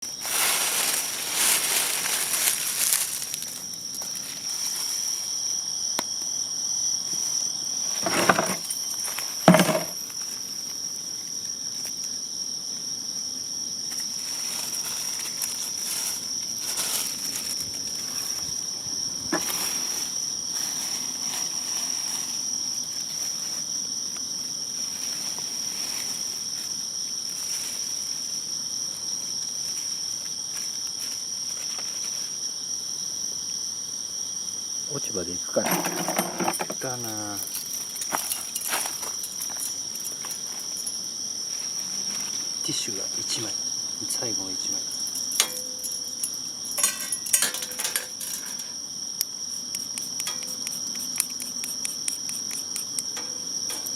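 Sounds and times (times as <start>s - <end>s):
crickets chirring: 0.0s - 53.9s
scraping or rustling noises: 0.2s - 5.2s, 7.9s - 10.4s, 14.0s - 18.5s, 19.3s - 23.7s, 24.8s - 26.7s, 35.6s - 42.5s, 45.0s - 48.8s.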